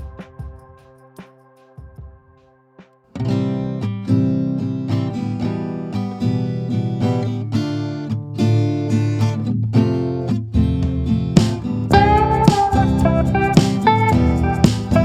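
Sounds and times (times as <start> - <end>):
acoustic guitar strumming chords: 3.1 - 15.0.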